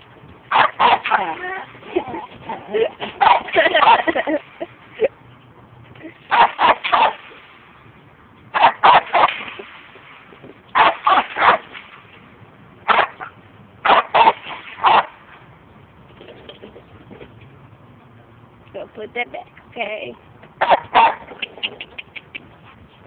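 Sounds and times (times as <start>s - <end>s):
dog barking: 0.5s - 1.4s, 3.2s - 4.1s, 6.3s - 7.2s, 8.6s - 9.3s, 10.8s - 11.6s, 12.9s - 13.2s, 13.9s - 15.1s, 20.6s - 21.3s.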